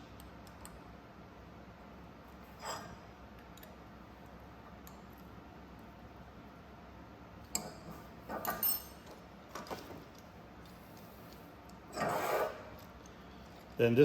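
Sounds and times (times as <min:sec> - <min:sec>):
ringing metal clinks: 0:08.4 - 0:09.0.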